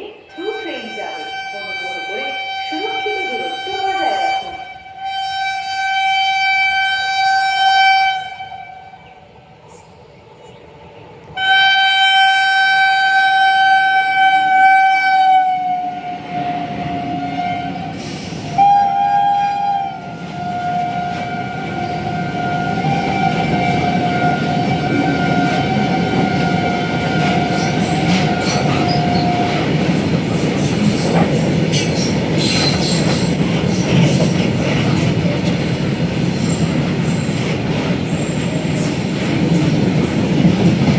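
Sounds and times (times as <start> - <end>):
train rushing past: 0.0 - 40.9
locomotive horn blasts: 0.3 - 9.2, 11.4 - 29.7.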